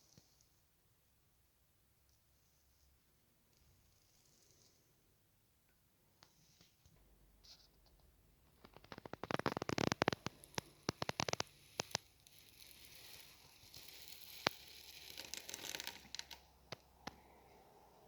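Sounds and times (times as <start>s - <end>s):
packaging rustling: 8.6s - 16.5s
packaging crackling: 8.6s - 16.8s.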